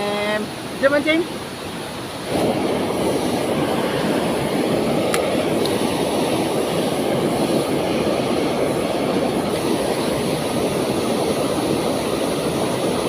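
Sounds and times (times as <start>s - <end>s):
waterfall rushing: 0.0s - 13.0s.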